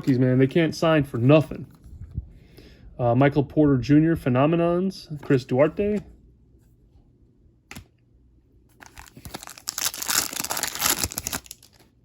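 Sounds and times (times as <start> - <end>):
foil wrapper tearing and crinkling: 8.8 - 11.9.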